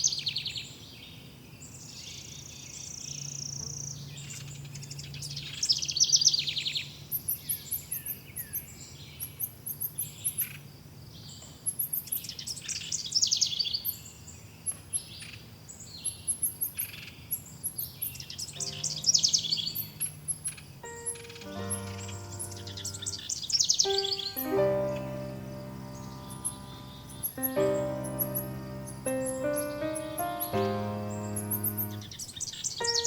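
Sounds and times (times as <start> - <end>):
fast trilled birdsong: 17.4 - 33.0
thin high bird chirps: 17.7 - 33.0.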